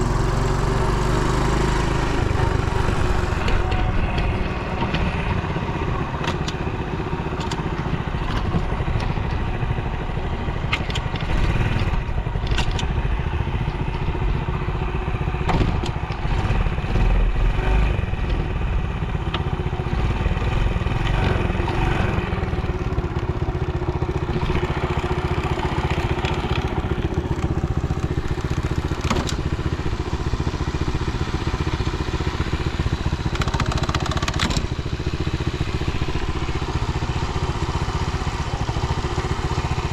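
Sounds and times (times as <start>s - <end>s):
small engine running: 0.0s - 39.9s
short clicks and clatter: 33.3s - 34.8s.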